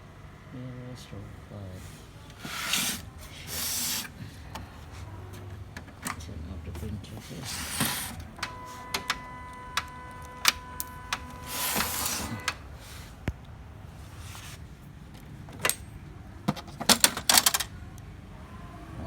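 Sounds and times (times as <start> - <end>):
printer whining tone: 5.6 - 13.2.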